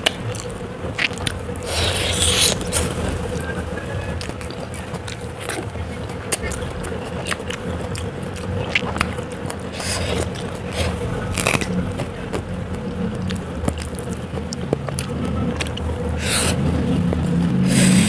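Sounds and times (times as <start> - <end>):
wet mouth clicks and smacks: 0.0 - 1.4, 4.2 - 15.9
chewing and crunching food: 0.0 - 18.0
low background rumble: 0.0 - 18.0.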